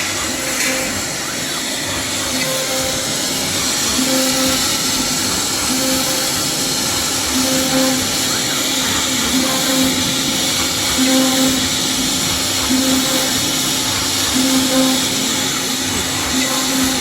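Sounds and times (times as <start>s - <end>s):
low machine hum: 0.0s - 17.0s.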